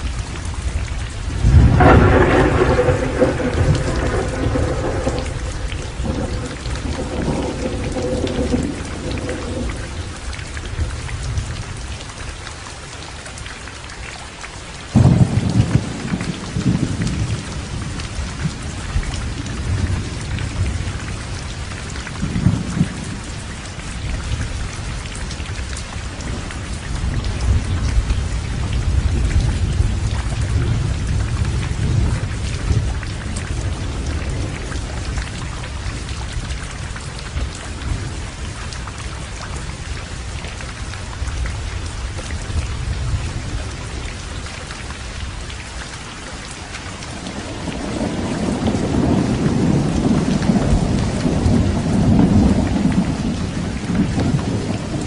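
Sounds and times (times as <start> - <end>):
thunder rumbling: 0.0 - 12.0, 14.9 - 25.0, 25.6 - 38.8, 47.0 - 55.0
heavy rain: 0.0 - 55.0
sharp thunderclap: 1.4 - 10.0, 14.9 - 17.7, 47.4 - 55.0.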